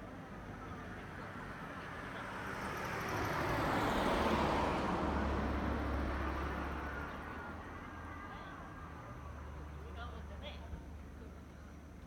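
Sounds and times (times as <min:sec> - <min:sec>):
vehicle passing by: 0:01.5 - 0:07.5.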